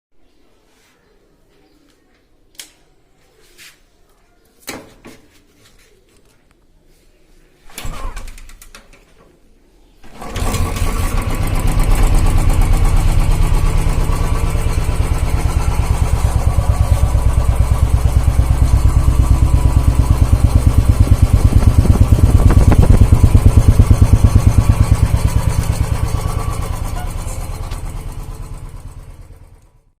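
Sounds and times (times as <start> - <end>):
motorcycle engine starting and running: 10.0 - 30.0.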